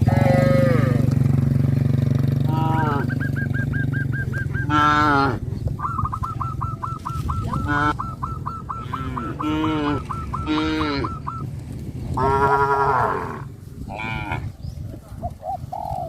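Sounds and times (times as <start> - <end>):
geese honking: 2.5 - 11.5.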